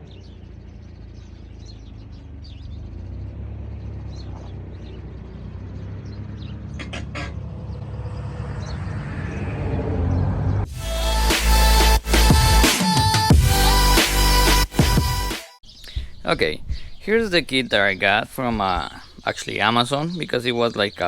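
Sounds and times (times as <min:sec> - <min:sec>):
birds chirping: 0:00.0 - 0:10.7, 0:15.1 - 0:21.0
vehicle engine rumble: 0:00.0 - 0:10.8, 0:15.6 - 0:21.0.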